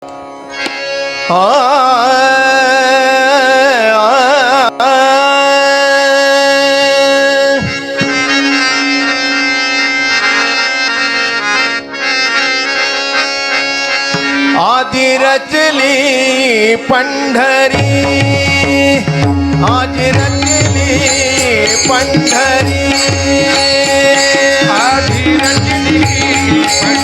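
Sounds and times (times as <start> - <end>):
harmonium drone: 0.0 - 27.0
person singing wordless line: 14.6 - 27.0.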